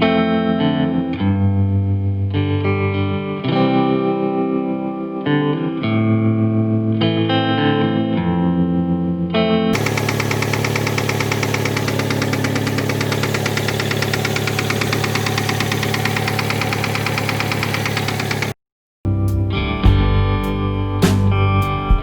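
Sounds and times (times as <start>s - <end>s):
car engine idling: 9.8s - 18.6s
rapid engine knock: 9.8s - 18.6s.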